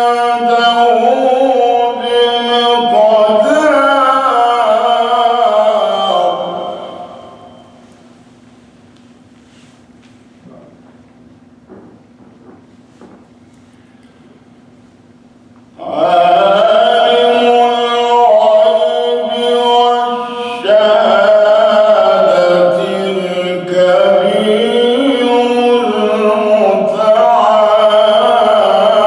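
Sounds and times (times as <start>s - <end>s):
man reciting melodically: 0.0s - 7.6s, 15.8s - 29.0s.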